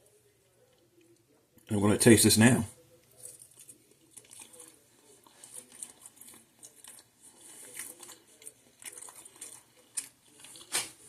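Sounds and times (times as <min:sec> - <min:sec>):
wet chewing mouth sounds: 0:03.0 - 0:11.0.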